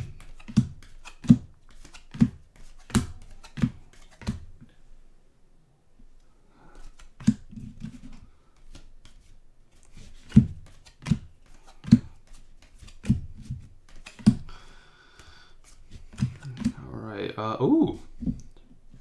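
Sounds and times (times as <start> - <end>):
cards tapping and clicking: 0.0 - 4.5, 6.8 - 16.8.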